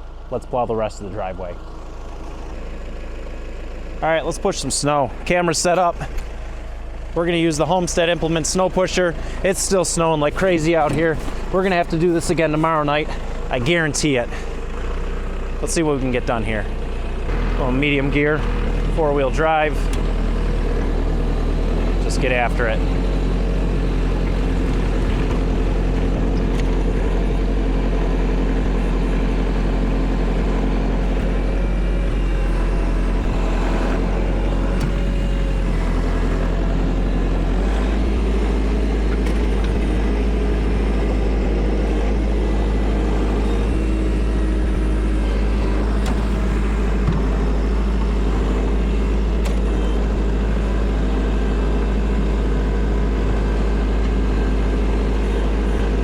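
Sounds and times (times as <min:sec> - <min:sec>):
tractor diesel engine under load: 0:00.0 - 0:56.0.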